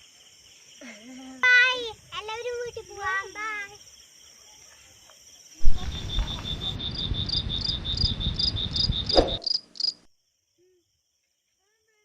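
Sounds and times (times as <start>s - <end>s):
crickets chirping: 0.0s - 12.0s
low rumbling noise: 5.6s - 9.4s.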